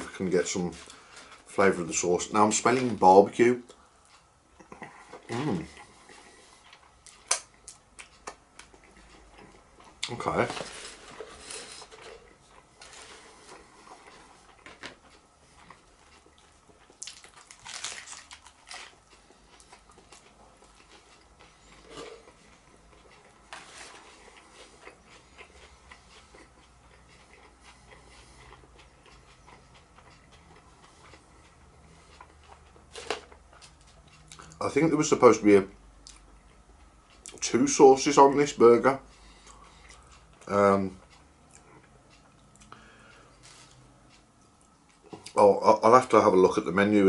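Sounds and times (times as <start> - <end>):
person biting and chewing: 11.0 - 34.6
crisp crunching bursts: 16.7 - 21.1.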